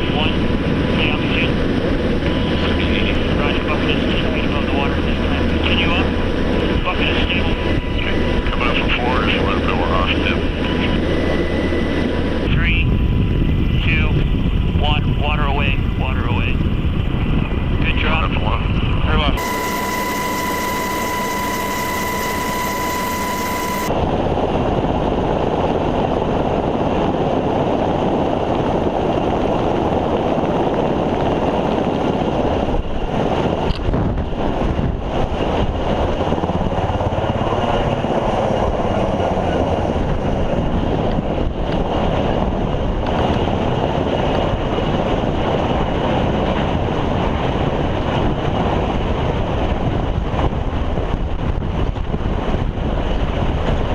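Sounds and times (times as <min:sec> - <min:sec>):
helicopter rotor and engine: 0:00.0 - 0:53.9
wind on microphone: 0:00.0 - 0:53.9
high electronic tone: 0:19.4 - 0:23.9.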